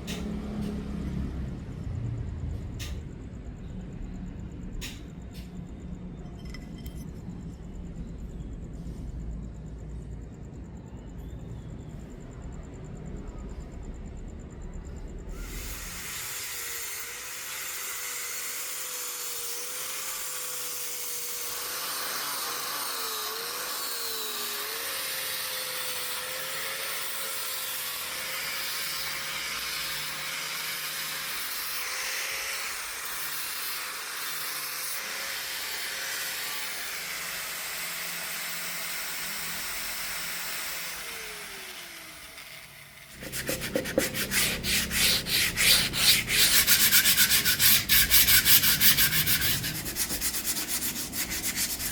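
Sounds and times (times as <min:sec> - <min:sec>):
sanding strokes on wood: 0:43.1 - 0:51.9.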